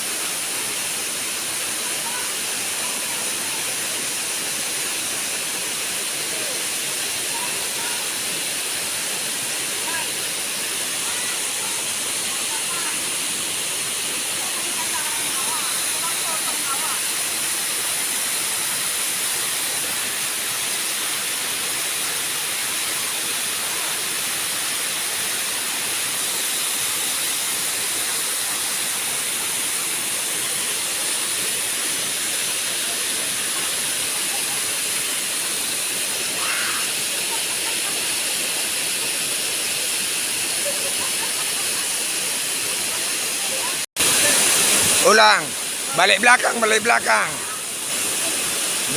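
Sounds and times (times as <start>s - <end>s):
waterfall rushing water: 0.0s - 48.9s.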